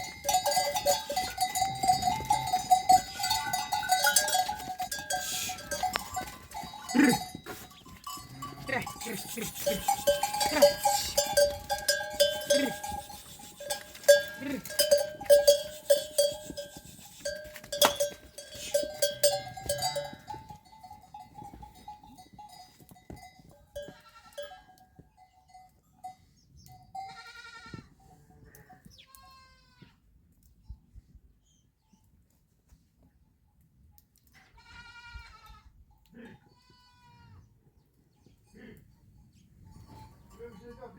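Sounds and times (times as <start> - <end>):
sheep bells clanking: 0.0 - 29.5, 38.1 - 40.9
sheep bleating: 1.1 - 15.9, 23.8 - 24.5, 27.1 - 27.9, 28.5 - 30.0, 34.4 - 37.5.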